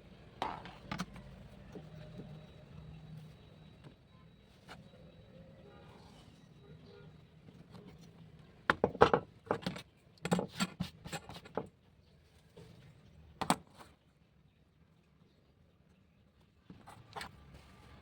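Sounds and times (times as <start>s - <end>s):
hard objects clicking and knocking: 8.7s - 11.7s.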